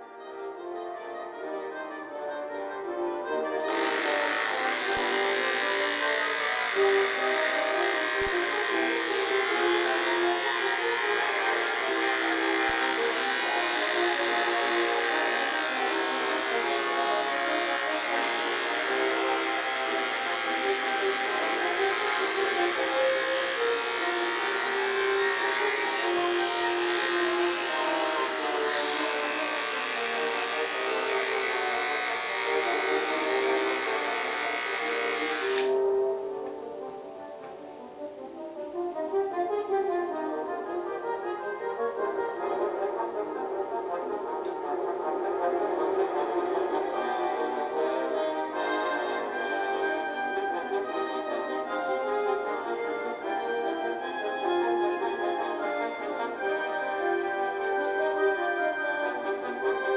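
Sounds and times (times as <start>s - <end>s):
slow brass music: 0.0s - 59.9s
electric clippers running: 3.6s - 36.0s, 39.0s - 42.6s, 45.6s - 59.9s.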